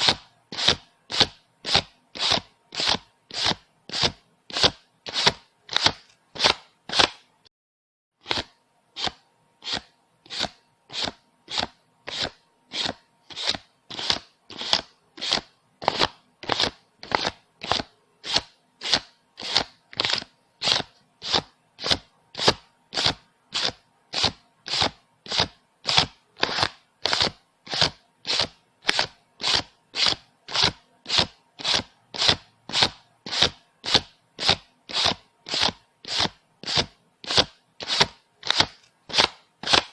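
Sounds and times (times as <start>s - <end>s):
banknotes being counted: 8.2s - 39.9s.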